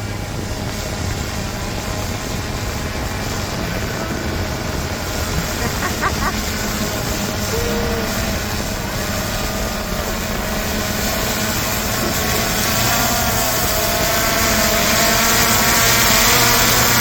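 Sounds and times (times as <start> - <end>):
drone propellers humming: 0.0 - 17.0.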